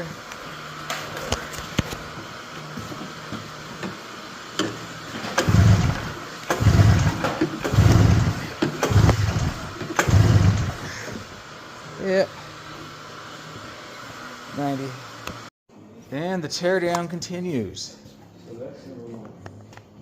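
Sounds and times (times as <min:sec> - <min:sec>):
engine cranking without starting: 0:05.4 - 0:11.2.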